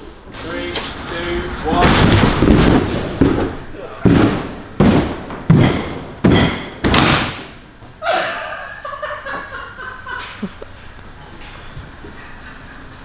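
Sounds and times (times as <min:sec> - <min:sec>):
heavy slams: 0:00.3 - 0:07.6.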